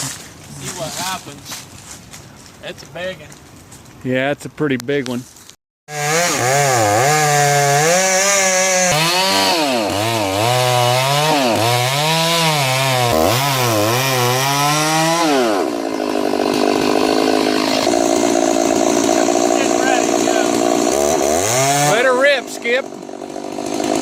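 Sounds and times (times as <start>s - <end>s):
chainsaw cutting wood: 5.9s - 24.0s.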